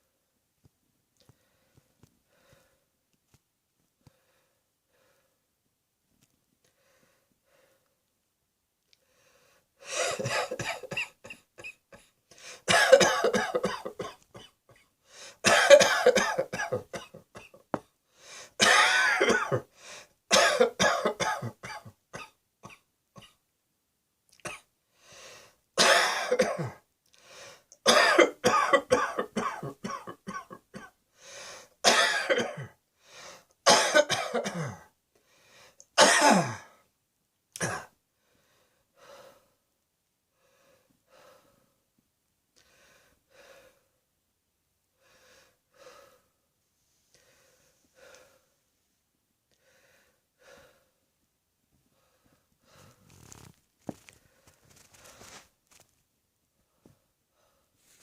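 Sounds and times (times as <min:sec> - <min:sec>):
person coughing: 0:09.9 - 0:17.9, 0:18.6 - 0:19.7, 0:20.3 - 0:23.4, 0:25.8 - 0:26.8, 0:27.9 - 0:30.9, 0:31.9 - 0:32.8, 0:33.7 - 0:34.9, 0:36.0 - 0:36.8, 0:37.6 - 0:37.9.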